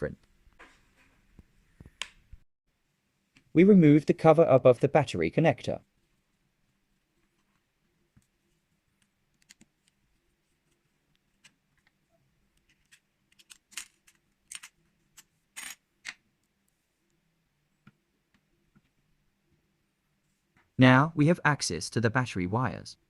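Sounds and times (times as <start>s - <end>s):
small parts clicking: 12.7s - 16.2s.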